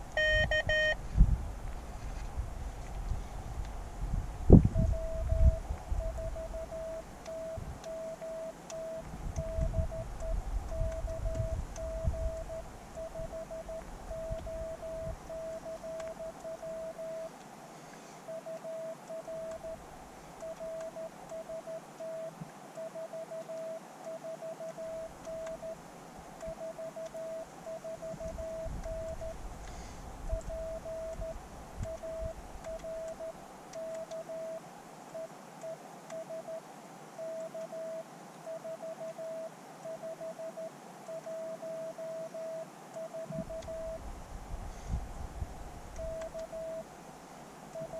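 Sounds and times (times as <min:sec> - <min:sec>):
morse code beep tone: 0:00.0 - 0:01.0, 0:04.7 - 0:17.3, 0:18.3 - 0:19.8, 0:20.4 - 0:25.8, 0:26.4 - 0:29.4, 0:30.3 - 0:34.6, 0:35.2 - 0:36.6, 0:37.2 - 0:44.0, 0:46.0 - 0:46.9
faint radio hiss: 0:00.0 - 0:47.9.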